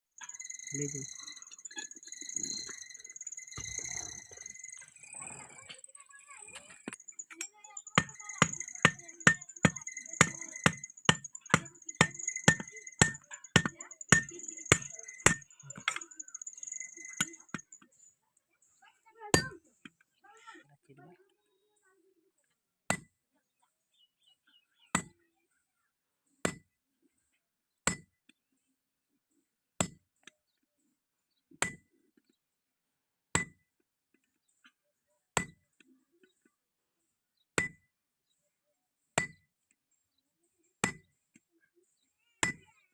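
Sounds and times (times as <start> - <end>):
anvil ringing: 8.0 - 16.0
hammer striking steel on anvil: 8.0 - 16.0.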